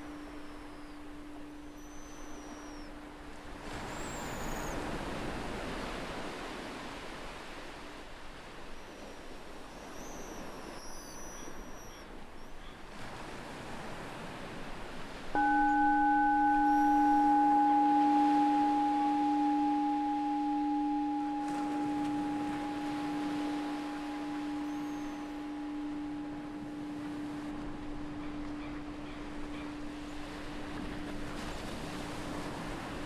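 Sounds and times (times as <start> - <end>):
meditation bell ringing: 0.0 - 5.0, 15.4 - 33.0
ocean waves washing: 0.0 - 9.5, 12.9 - 33.0
seagulls calling: 15.4 - 31.7.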